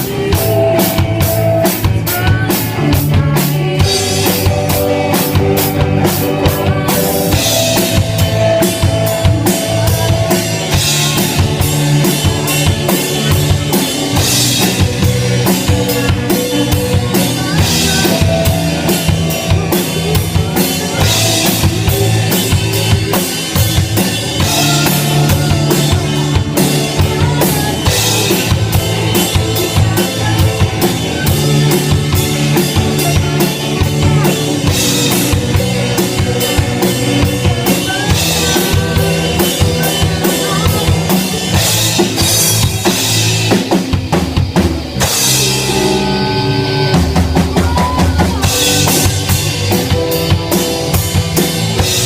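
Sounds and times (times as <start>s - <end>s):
band music: 0.0s - 52.0s.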